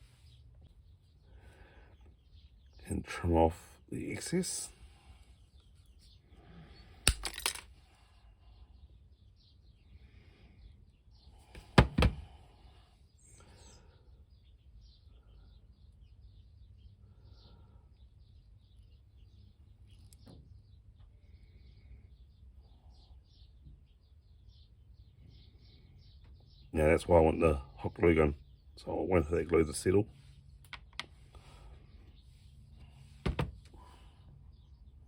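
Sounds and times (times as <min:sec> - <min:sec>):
cutters snapping wire: 0:07.1 - 0:07.6.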